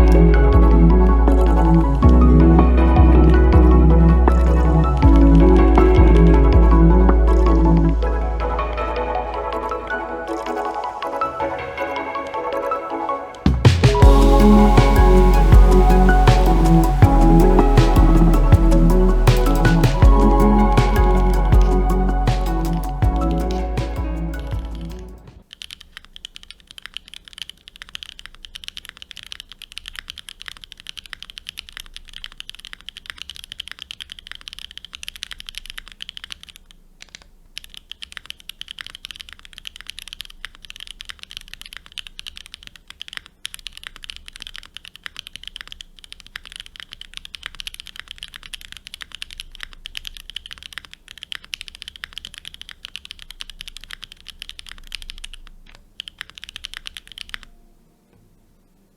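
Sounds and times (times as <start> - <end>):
mechanical keyboard typing: 25.4 - 57.5.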